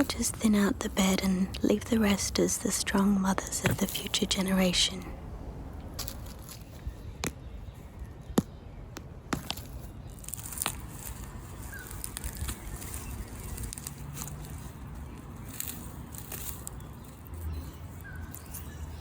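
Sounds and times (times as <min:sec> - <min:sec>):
rustling of dry leaves and soil: 0:05.5 - 0:19.0.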